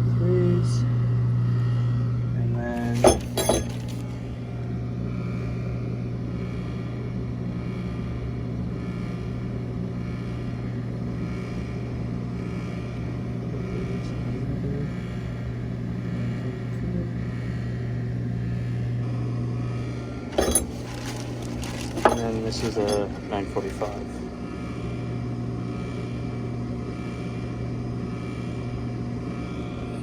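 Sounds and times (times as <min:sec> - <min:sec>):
low mechanical hum: 0:00.0 - 0:30.0.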